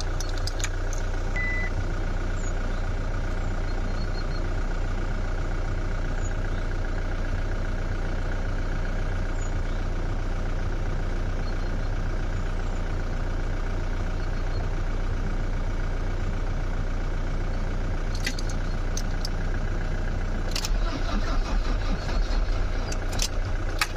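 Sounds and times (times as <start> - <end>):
sharp clicks: 0.0 - 1.1, 20.5 - 20.8, 22.8 - 23.9
car engine cranking: 0.0 - 1.7, 18.1 - 19.4, 20.4 - 23.9.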